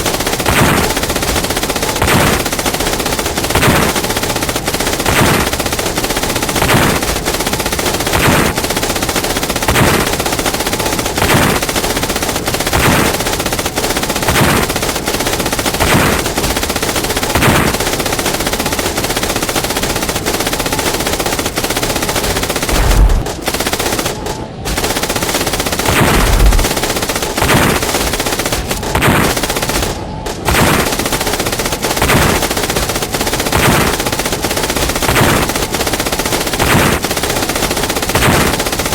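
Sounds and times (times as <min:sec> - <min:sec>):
deep grenade explosions: 0:00.0 - 0:18.4, 0:21.8 - 0:35.8
rapid machine-gun fire: 0:00.0 - 0:38.9
single rifle shots: 0:09.6 - 0:12.0, 0:22.6 - 0:25.2, 0:25.8 - 0:31.0.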